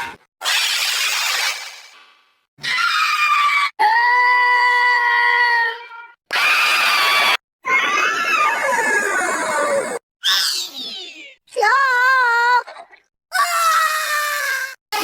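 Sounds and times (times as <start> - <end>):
cartoon character screaming: 2.6 - 11.2.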